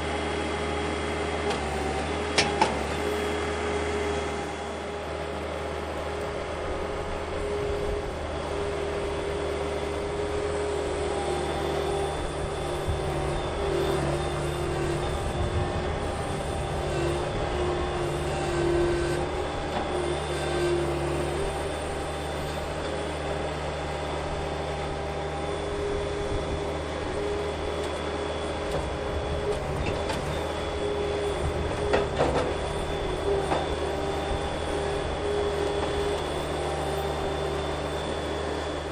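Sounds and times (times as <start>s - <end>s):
skid steer engine under load: 0.0s - 38.9s.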